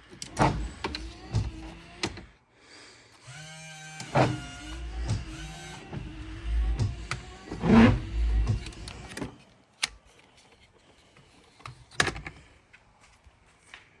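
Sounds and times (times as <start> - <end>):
wiper motor running: 0.4 - 2.3, 3.2 - 9.3.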